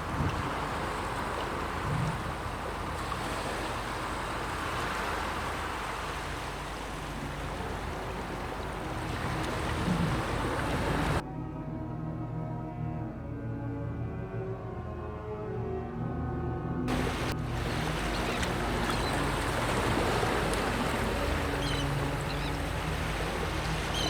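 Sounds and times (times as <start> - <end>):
sea surf and waves: 0.0 - 11.2, 16.9 - 24.0
music: 8.9 - 24.0.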